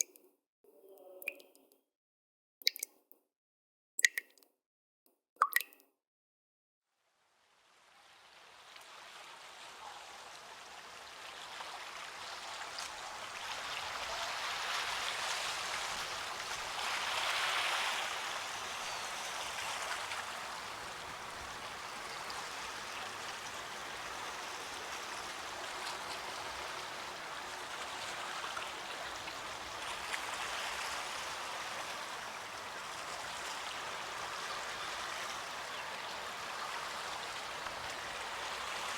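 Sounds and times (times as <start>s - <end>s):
stream water rushing: 8.0s - 38.9s.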